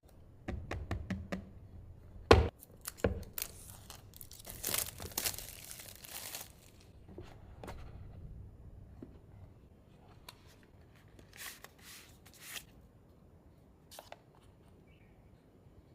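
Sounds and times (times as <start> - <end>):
packaging tearing and crinkling: 2.6 - 6.9.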